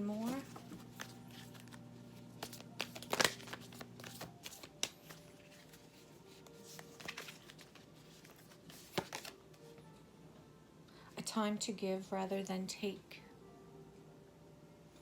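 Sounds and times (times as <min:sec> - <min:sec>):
cards shuffling: 0:00.1 - 0:09.6
soft slaps and rustles of cards: 0:02.4 - 0:09.6.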